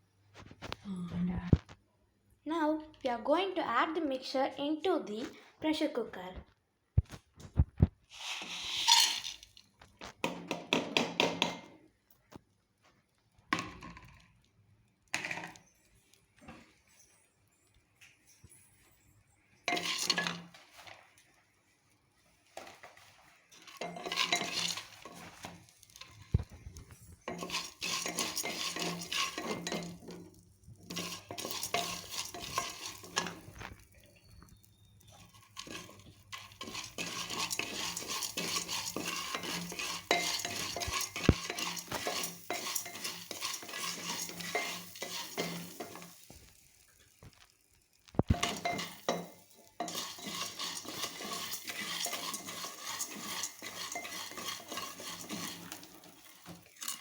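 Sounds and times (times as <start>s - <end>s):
light sizzle: 0.0s - 10.5s, 11.4s - 57.0s
spoon scraping and clinking pot: 8.1s - 9.8s, 19.6s - 21.1s, 22.6s - 47.5s, 48.1s - 57.0s.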